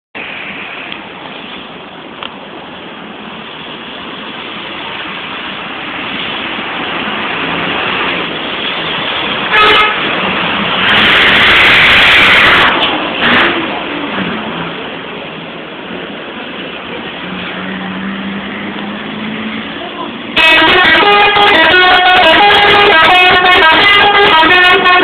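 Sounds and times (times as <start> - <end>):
bus engine: 0.2 - 25.0
loud noisy surge: 5.2 - 25.0
bus horn blast: 9.5 - 10.2, 10.8 - 13.7, 20.4 - 25.0.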